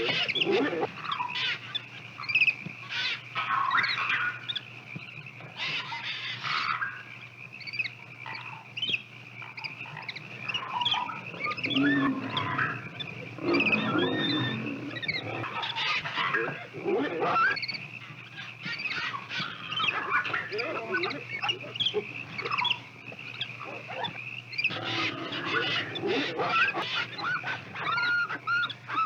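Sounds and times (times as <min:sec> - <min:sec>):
lower animal calls: 0:09.5 - 0:22.8, 0:23.4 - 0:29.0.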